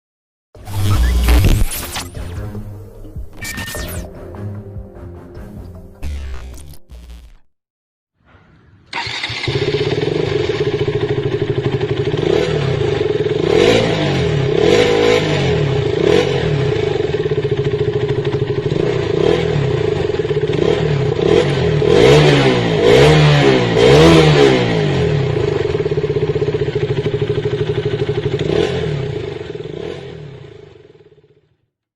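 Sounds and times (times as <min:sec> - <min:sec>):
motorcycle engine revving: 0:08.9 - 0:31.6.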